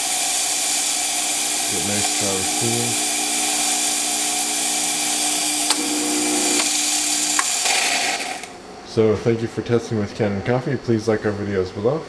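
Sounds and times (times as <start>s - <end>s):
espresso steam wand hissing: 0.0s - 8.6s.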